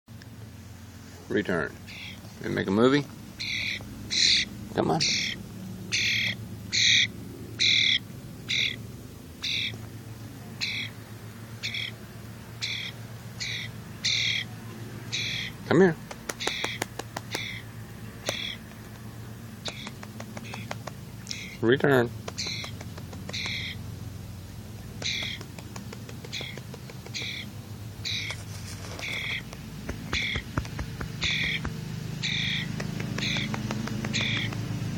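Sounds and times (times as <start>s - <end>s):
bird squawking calls: 1.8s - 2.3s, 3.4s - 8.8s, 9.4s - 9.8s, 10.6s - 11.0s, 11.6s - 12.0s, 12.6s - 14.5s, 15.1s - 15.6s, 16.3s - 18.8s, 19.6s - 21.7s, 22.3s - 23.8s, 24.9s - 34.6s.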